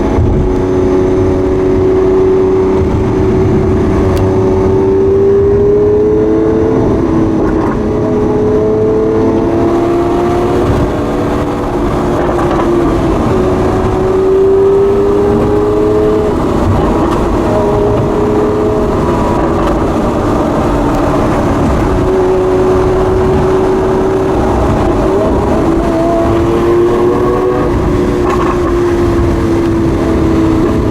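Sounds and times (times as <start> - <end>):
car engine while driving: 0.0 - 30.9
low road rumble: 0.0 - 30.9.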